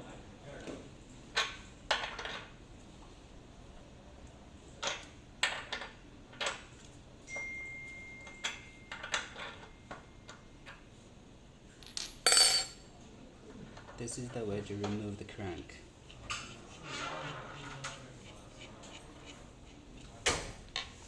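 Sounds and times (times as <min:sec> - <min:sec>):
metal tools clicking and knocking: 0:11.8 - 0:12.8
thin high ring: 0:11.8 - 0:12.8.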